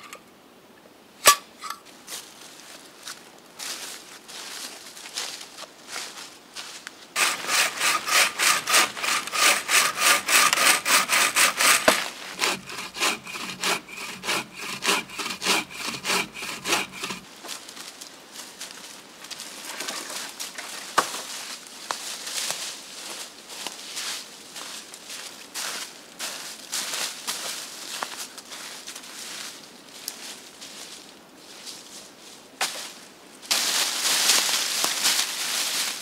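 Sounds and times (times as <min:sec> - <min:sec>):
hand saw cutting wood: 0:07.2 - 0:17.2.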